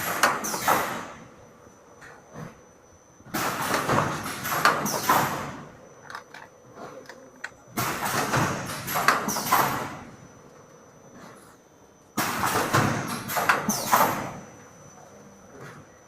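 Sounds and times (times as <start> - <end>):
machine sharp clack: 3.3 - 5.6.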